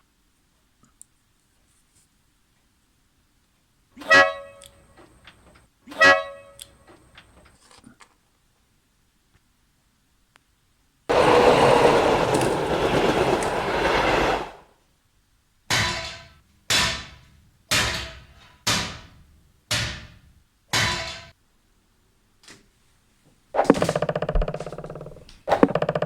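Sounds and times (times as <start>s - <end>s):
sudden loud rush of noise: 11.1s - 14.7s.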